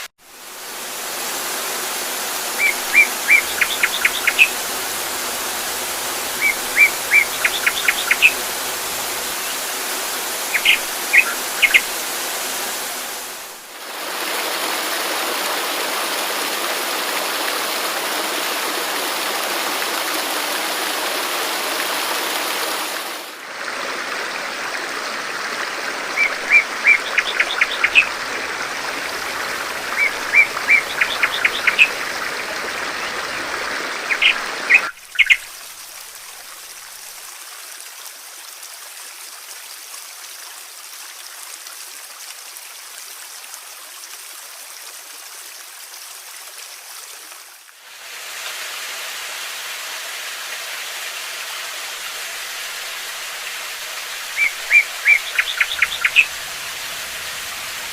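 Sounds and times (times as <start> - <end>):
waterfall rushing: 0.0 - 37.2, 47.8 - 57.9
songbird chirping and trilling: 2.5 - 4.7, 6.3 - 12.0, 26.2 - 28.2, 29.9 - 32.1, 34.1 - 35.5, 54.3 - 57.0.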